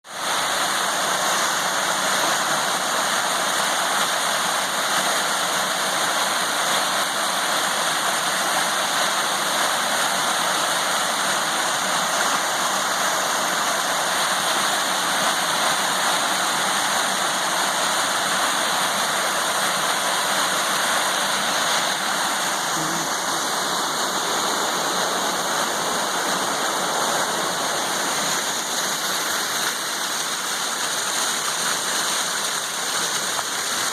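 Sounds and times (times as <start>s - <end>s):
water rushing over rocks: 0.0s - 33.9s.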